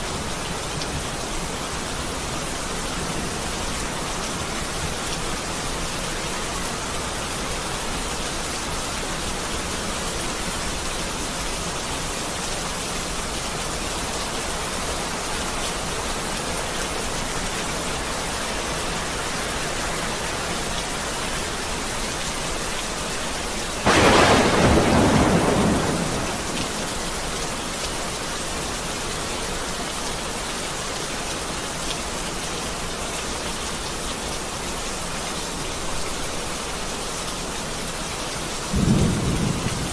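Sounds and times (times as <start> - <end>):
heavy rain falling: 0.0 - 39.9
thunder clap: 23.9 - 27.6, 38.8 - 39.9.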